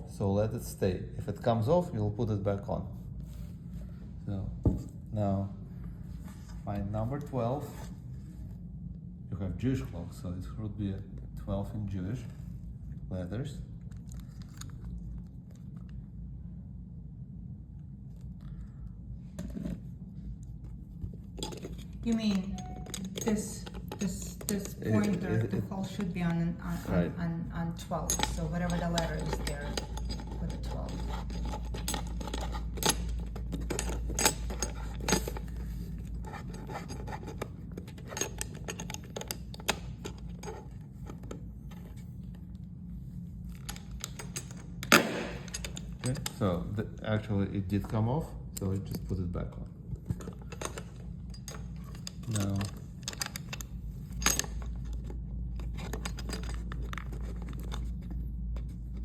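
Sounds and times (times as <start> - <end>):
low hum: 0.0 - 59.0
small metal parts clinking: 21.3 - 26.0, 27.8 - 35.7, 43.5 - 46.5, 50.3 - 58.0.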